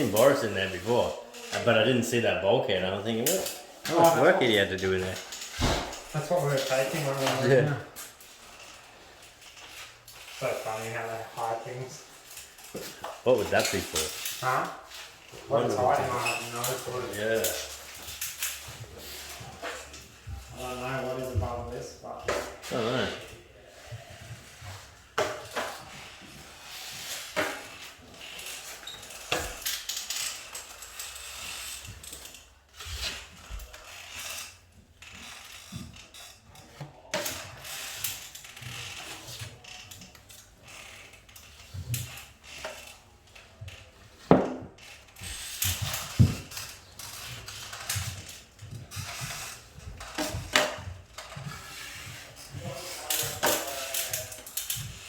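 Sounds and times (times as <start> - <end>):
sharp knocks: 5.6 - 6.1
hand tools scraping and knocking: 12.7 - 14.6, 43.7 - 55.0.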